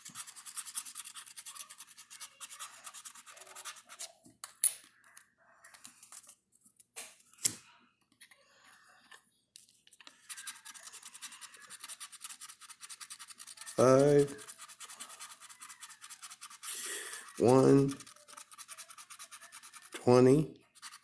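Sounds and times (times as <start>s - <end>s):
lottery ticket scratching: 0.0s - 4.2s, 10.1s - 21.0s.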